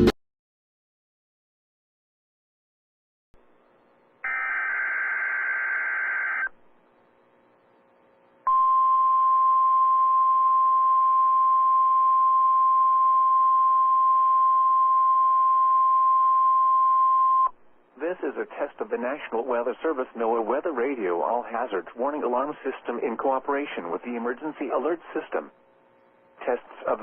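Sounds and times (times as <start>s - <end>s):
steady alarm tone: 4.2s - 6.5s
harsh digital data burst: 4.3s - 6.5s.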